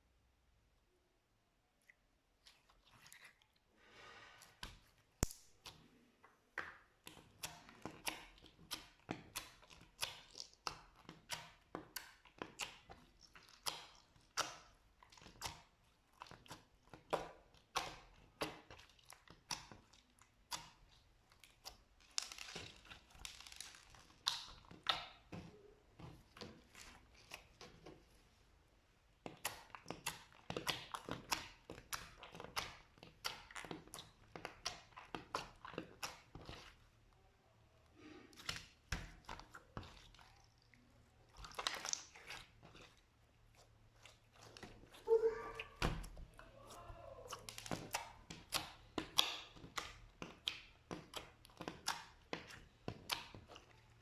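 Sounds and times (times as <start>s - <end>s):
slime squishing with sticky clicks: 4.4s - 54.0s.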